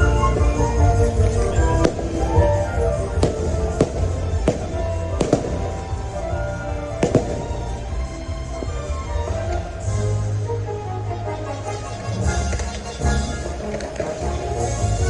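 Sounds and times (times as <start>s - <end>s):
holiday show music: 0.0s - 15.0s
fireworks bangs: 1.1s - 9.6s.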